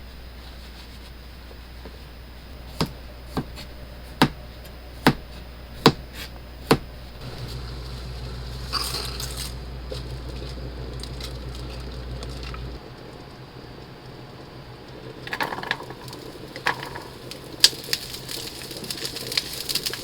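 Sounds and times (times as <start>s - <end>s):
steady low hum: 0.0s - 17.4s
knife chopping on cutting board: 2.7s - 4.4s, 5.0s - 7.0s.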